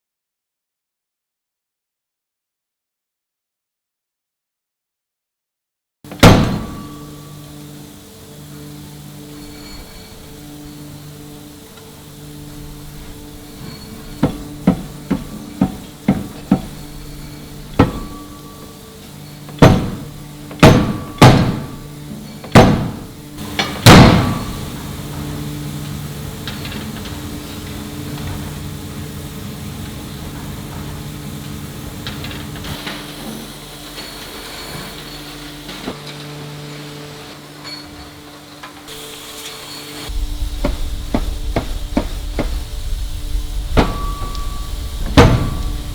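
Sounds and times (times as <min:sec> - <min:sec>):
hammer striking metal: 0:06.1 - 0:07.5, 0:12.8 - 0:25.1, 0:40.6 - 0:45.9
steady machine hum: 0:06.1 - 0:45.9.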